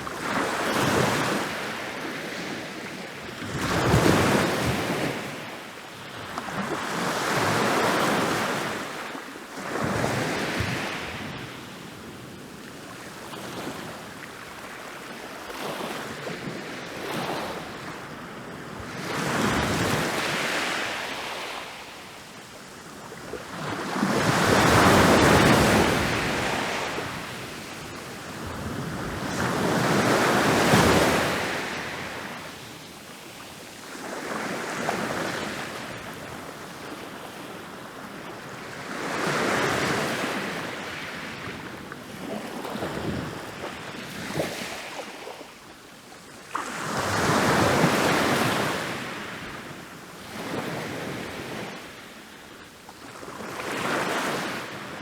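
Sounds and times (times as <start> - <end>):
ocean waves breaking on beach: 15.4 - 45.8.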